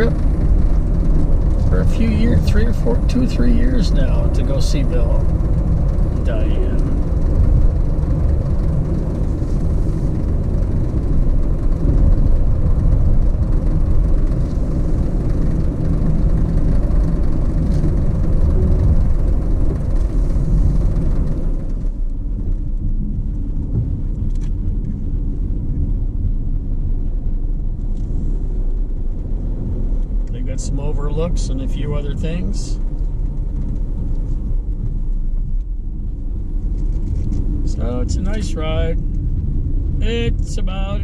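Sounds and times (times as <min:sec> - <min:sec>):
car engine and tyre rumble: 0:00.0 - 0:41.0.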